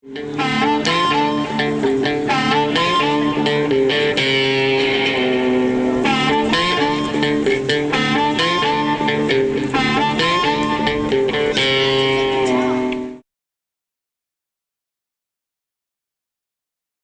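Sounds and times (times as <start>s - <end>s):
guitar-led instrumental music: 0.0s - 13.2s.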